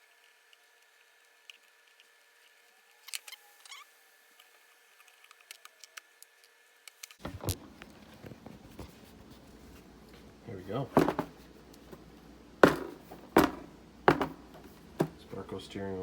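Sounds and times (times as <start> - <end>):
handling noise: 7.2 - 15.5.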